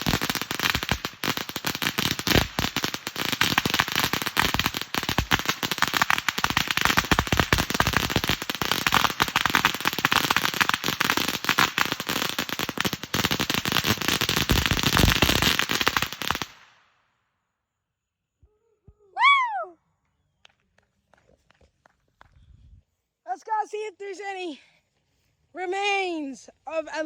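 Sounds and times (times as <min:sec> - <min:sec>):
firecrackers going off: 0:00.0 - 0:16.8.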